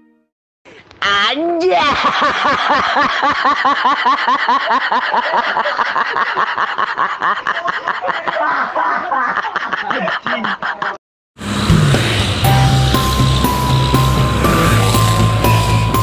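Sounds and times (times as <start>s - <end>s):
rapid laughter: 1.6s - 11.0s.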